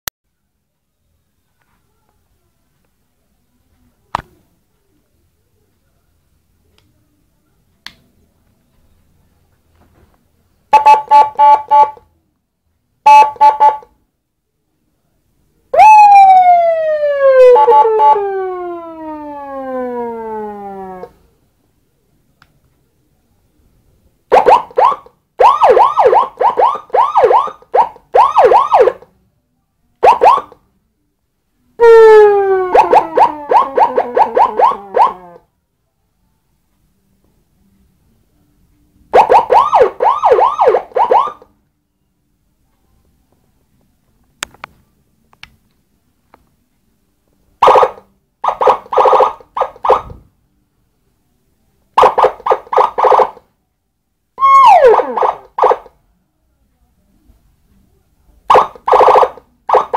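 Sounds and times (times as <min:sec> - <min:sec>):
electronic siren yelping: 0:15.8 - 0:21.1, 0:24.3 - 0:29.0, 0:30.0 - 0:30.5, 0:31.8 - 0:35.4, 0:39.2 - 0:41.4, 0:47.6 - 0:50.1, 0:52.0 - 0:53.4, 0:54.4 - 0:55.9, 0:58.5 - 0:59.9.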